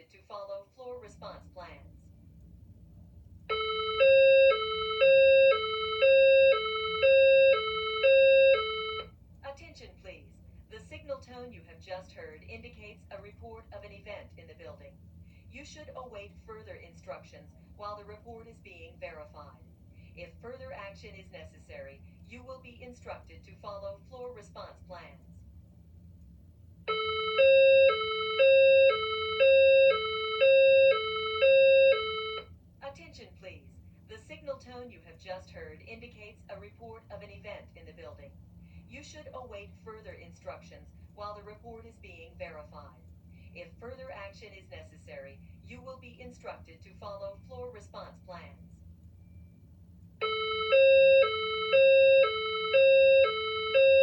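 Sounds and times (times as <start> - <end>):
fire alarm two-tone signal: 3.5 - 9.1, 26.9 - 32.5, 50.2 - 54.0.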